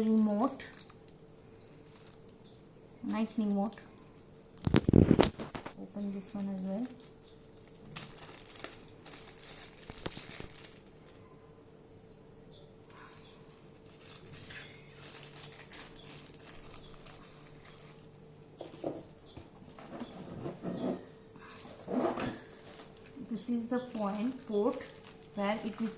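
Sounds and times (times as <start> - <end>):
packaging rustling and clicking: 0.0 - 2.6, 3.8 - 11.2, 13.5 - 20.8, 21.6 - 25.9
faint steady hum: 0.0 - 25.9
bird chirps: 11.2 - 13.5.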